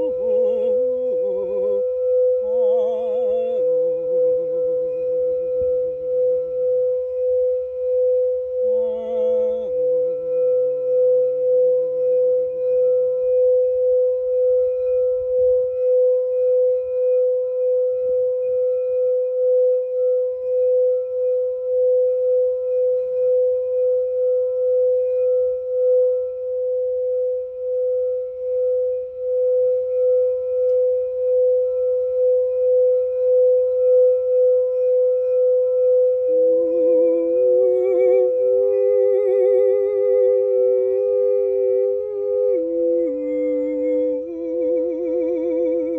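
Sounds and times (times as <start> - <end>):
low warbling tone: 0.0 - 12.7, 32.5 - 45.9
singing bowl ringing: 0.0 - 45.9.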